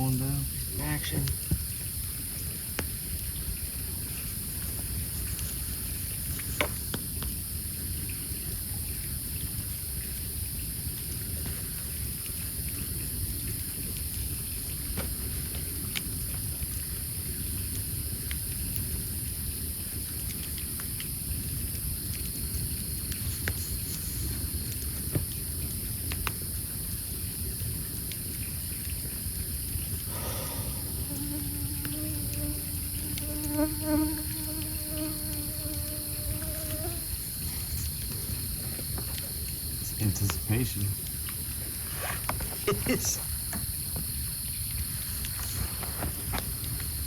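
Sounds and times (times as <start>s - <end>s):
night insects droning: 0.0s - 47.0s
wood fire crackling: 12.0s - 44.0s.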